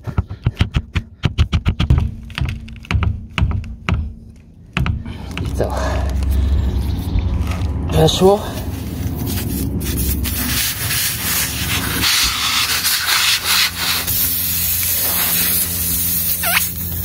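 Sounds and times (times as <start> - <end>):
tool scraping against tyre rubber: 8.4 - 17.0.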